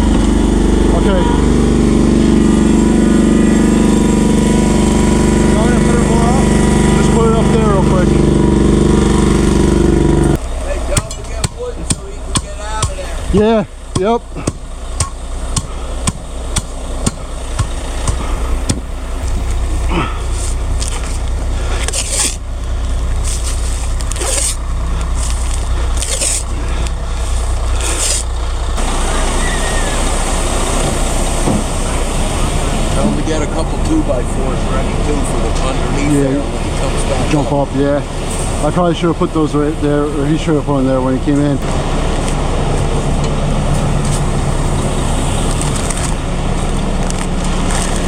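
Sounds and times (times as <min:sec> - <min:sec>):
heavy engine humming: 0:00.0 - 0:48.0
scraping rasps: 0:10.2 - 0:28.6.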